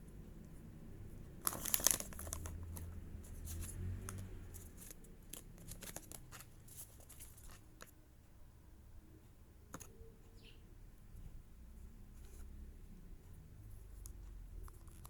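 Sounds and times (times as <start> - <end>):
packaging clicks and taps: 1.4 - 2.9, 3.5 - 7.9.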